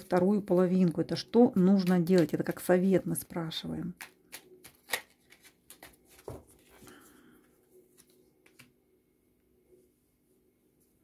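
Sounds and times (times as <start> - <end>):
cards flicking and tapping: 3.9 - 6.6, 8.0 - 8.8
cards snapping: 4.0 - 6.0.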